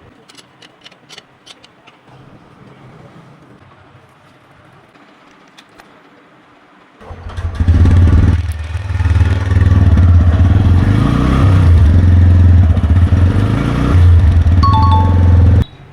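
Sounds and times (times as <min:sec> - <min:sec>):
motorcycle engine revving: 0:07.1 - 0:15.6.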